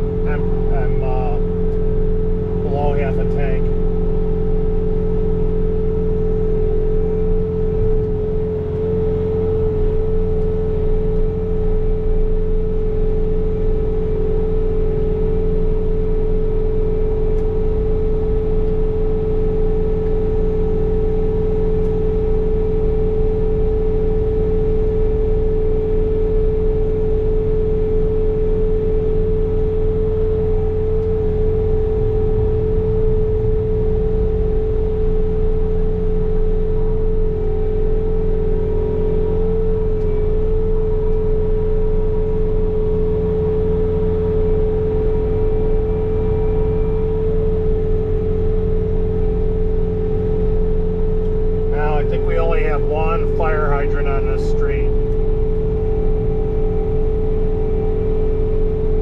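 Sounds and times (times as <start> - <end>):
diesel engine running: 0.0 - 59.0
snow blower whine: 25.6 - 59.0.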